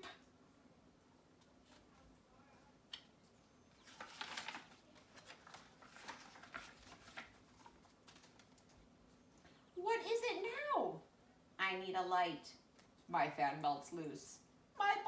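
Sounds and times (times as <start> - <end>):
small clicks of pages: 2.9 - 9.5
book pages rustling: 3.7 - 9.2.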